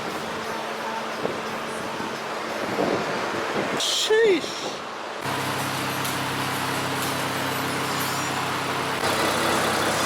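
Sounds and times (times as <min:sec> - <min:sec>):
car engine running: 0:05.3 - 0:10.0.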